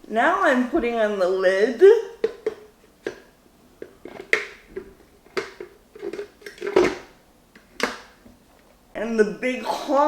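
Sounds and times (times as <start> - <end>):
plastic lid clicks and knocks: 2.2 - 8.4.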